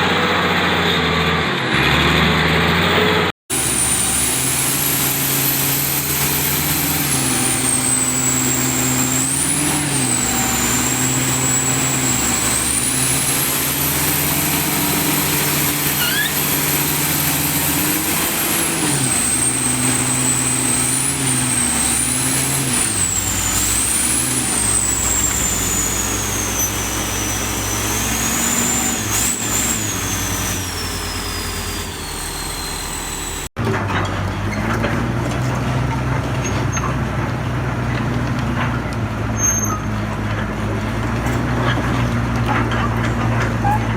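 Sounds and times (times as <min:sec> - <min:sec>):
bulldozer diesel engine running: 0:00.0 - 0:43.9
high engine whine: 0:02.9 - 0:34.5.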